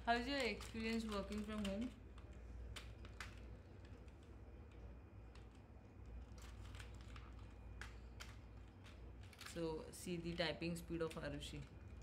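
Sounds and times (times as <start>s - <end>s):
computer keyboard keys clicking: 0.2s - 5.6s.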